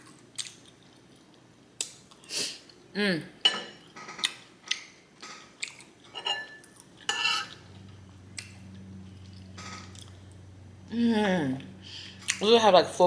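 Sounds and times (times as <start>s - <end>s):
low steady hum: 0.0s - 13.0s
utensil clinking against a dish: 6.1s - 7.7s.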